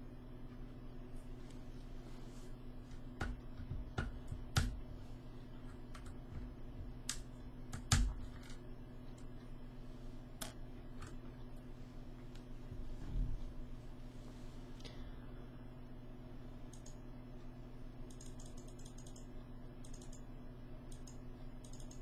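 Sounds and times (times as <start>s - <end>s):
keyboard parts clicking: 2.9s - 4.8s, 5.6s - 9.3s.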